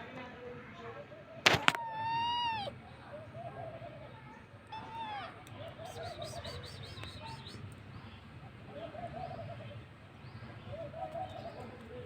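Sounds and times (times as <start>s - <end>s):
birds chirping and cooing: 0.9s - 12.0s
cat meowing: 1.7s - 2.7s.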